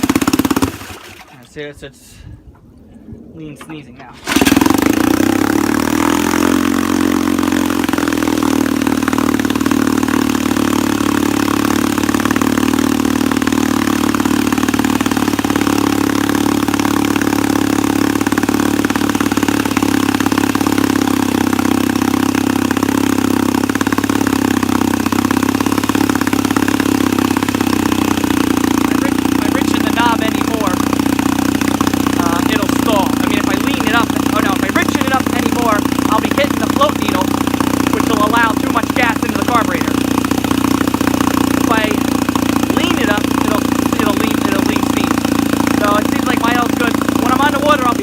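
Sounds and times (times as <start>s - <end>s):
outboard motor running: 0.0s - 1.5s, 3.7s - 48.0s.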